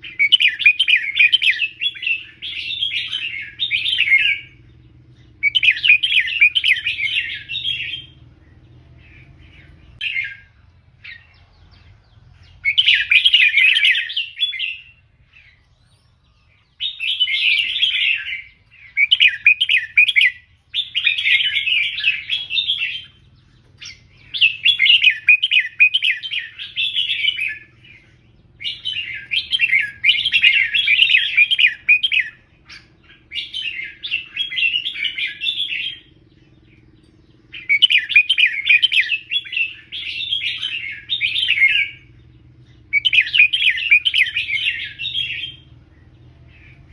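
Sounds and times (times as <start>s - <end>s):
bird warbling song: 0.0s - 46.9s.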